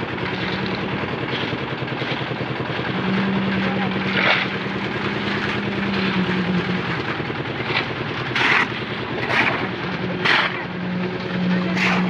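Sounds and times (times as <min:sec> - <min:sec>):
concrete mixer engine running: 0:00.0 - 0:12.0.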